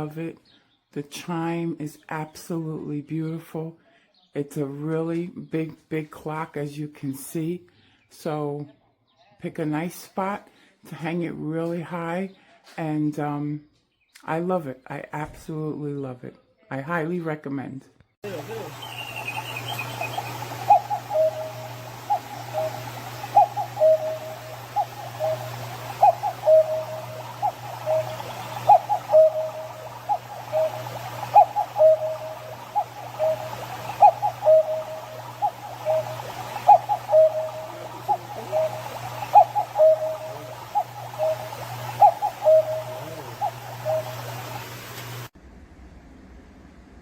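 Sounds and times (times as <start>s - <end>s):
steady low hum: 18.2s - 47.0s
two-note cuckoo clock call: 18.9s - 44.4s.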